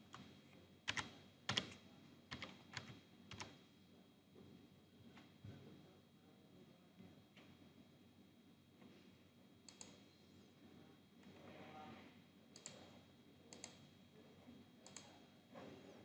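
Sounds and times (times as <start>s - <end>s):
computer mouse clicks: 9.7s - 10.0s, 12.6s - 12.9s, 13.5s - 13.8s, 14.8s - 15.1s.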